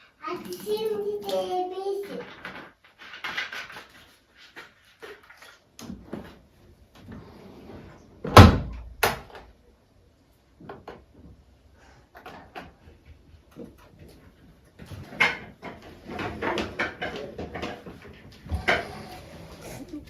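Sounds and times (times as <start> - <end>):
household knocks and clicks: 14.8 - 19.8.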